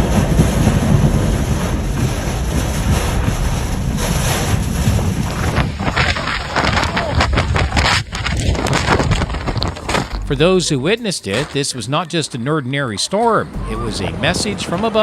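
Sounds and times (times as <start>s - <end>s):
wind buffeting microphone: 0.0s - 11.8s, 13.4s - 15.0s
sharp crackling clicks: 2.8s - 10.5s.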